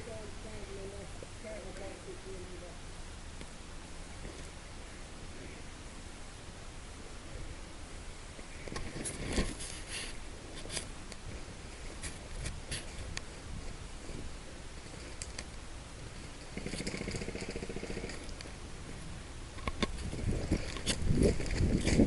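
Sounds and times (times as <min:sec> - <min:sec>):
sharp clicks and rattles: 0:14.8 - 0:15.6, 0:16.2 - 0:18.5, 0:19.5 - 0:22.0.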